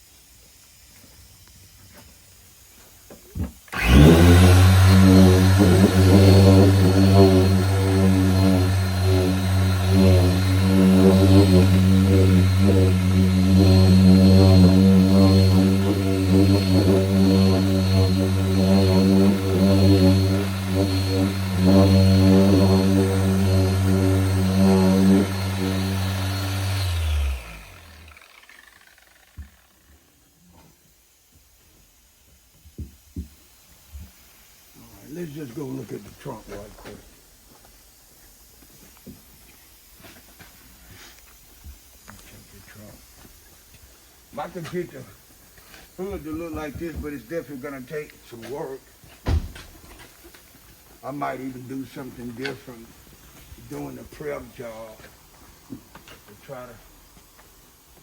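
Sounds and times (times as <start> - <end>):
electric polisher humming: 3.8 - 30.1.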